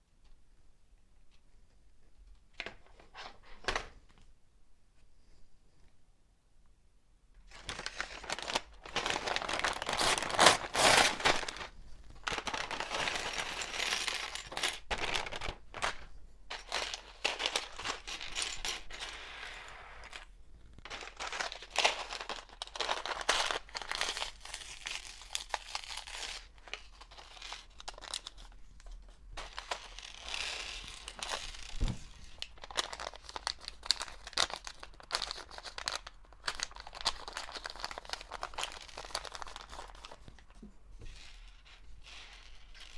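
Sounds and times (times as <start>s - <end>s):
plastic bags crinkling: 7.4s - 28.6s, 29.4s - 40.4s.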